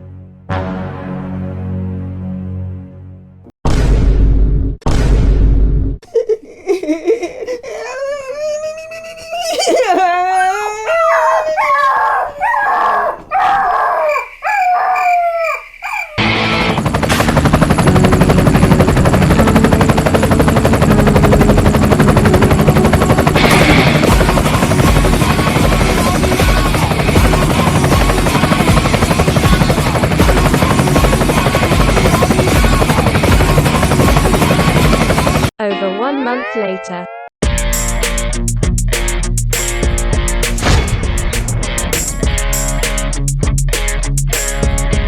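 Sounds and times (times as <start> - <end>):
wavering howling cry: 6.1 - 16.2.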